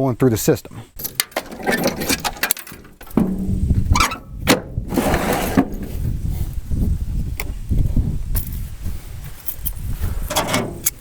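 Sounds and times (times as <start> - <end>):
metallic clicks and scraping: 1.0 - 5.9, 9.4 - 11.0.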